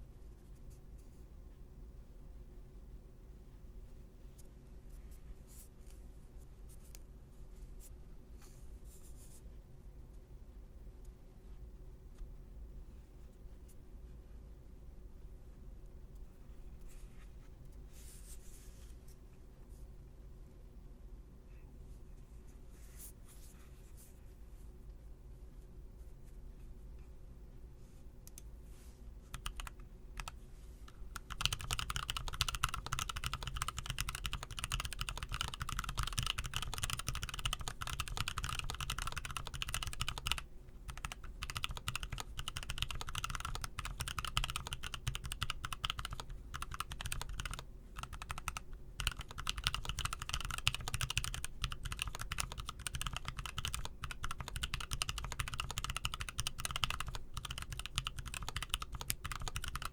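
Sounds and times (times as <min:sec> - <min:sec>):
typing on mechanical keyboard: 0:29.3 - 0:59.9.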